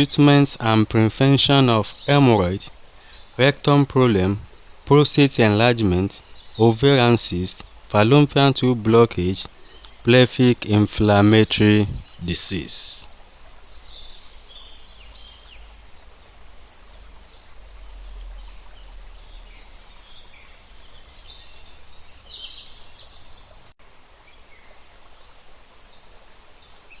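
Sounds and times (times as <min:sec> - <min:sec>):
bird chirps: 0:00.0 - 0:13.1.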